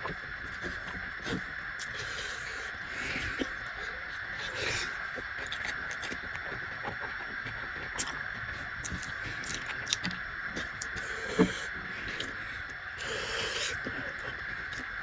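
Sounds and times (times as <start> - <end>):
person chewing: 0.0 - 15.0
small mouth clicks: 4.4 - 7.2, 7.9 - 8.2, 8.8 - 14.9
lip smacks: 8.8 - 14.9.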